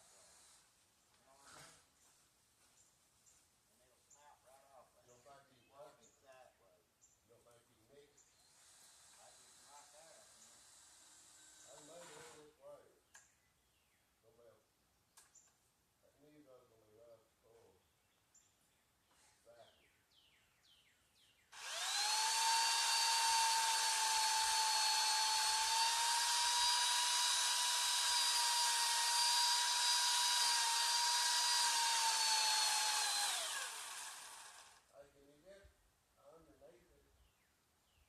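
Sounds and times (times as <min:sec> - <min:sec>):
power tool motor whining: 0:08.5 - 0:12.5, 0:21.6 - 0:34.9.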